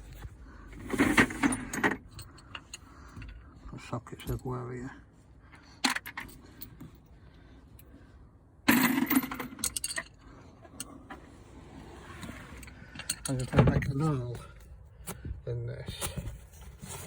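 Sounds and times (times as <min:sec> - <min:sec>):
metal sockets clinking: 0:08.7 - 0:10.1.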